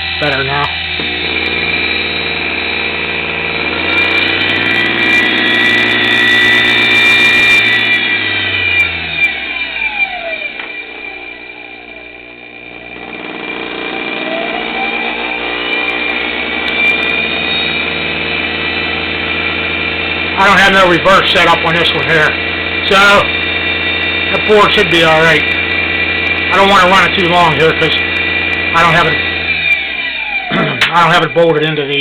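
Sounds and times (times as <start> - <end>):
treadmill motor whine: 0.0 - 32.0.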